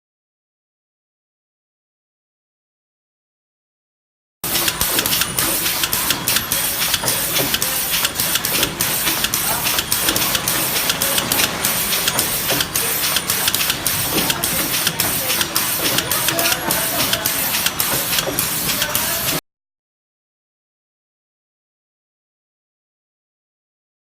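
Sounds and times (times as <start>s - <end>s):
machine clicks and clacks: 4.4s - 19.4s
wrapping machine hissing: 4.4s - 19.4s.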